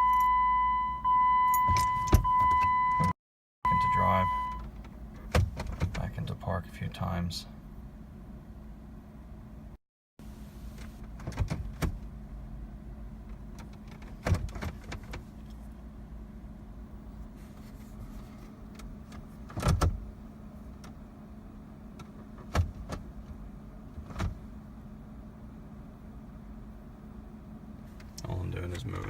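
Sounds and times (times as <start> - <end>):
gear selector clicks and clunks: 1.4 - 6.1, 13.2 - 15.6, 18.3 - 20.0, 20.7 - 21.0, 21.9 - 23.4, 24.0 - 24.4.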